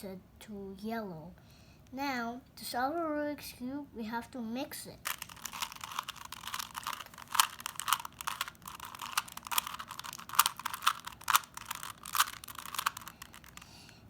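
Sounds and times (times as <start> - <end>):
puzzle cube rattling clicks: 5.0 - 14.0.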